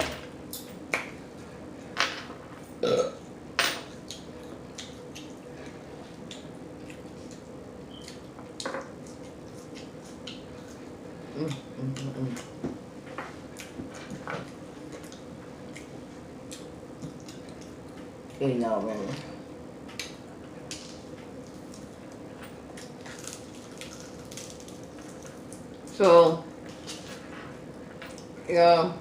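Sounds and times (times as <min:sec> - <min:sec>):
chewing and smacking: 0:04.0 - 0:10.8, 0:13.2 - 0:18.4, 0:19.9 - 0:26.0.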